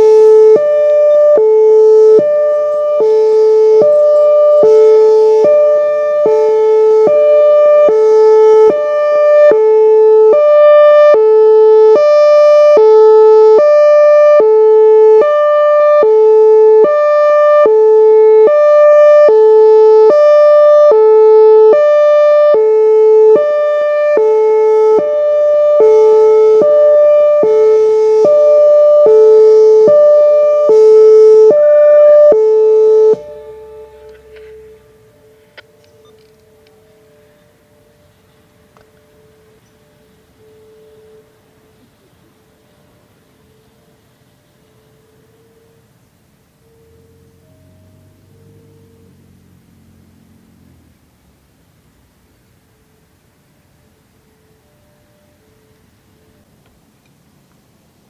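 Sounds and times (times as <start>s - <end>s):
rotating warning siren hi-lo tone: 0.0s - 58.0s.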